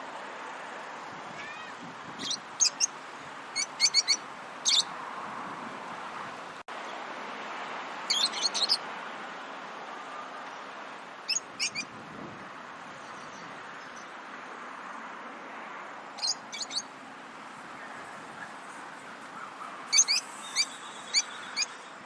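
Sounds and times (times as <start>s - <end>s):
birds chirping: 1.4s - 4.9s, 8.1s - 8.8s, 11.3s - 11.9s, 12.8s - 14.4s, 16.2s - 17.0s, 17.6s - 22.0s.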